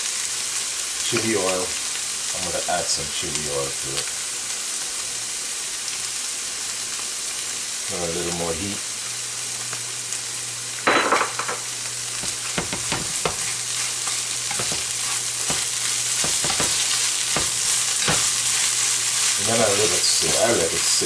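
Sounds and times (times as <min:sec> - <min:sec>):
food sizzling in hot oil: 0:00.0 - 0:21.0
utensil scraping and tapping pan: 0:12.2 - 0:18.4.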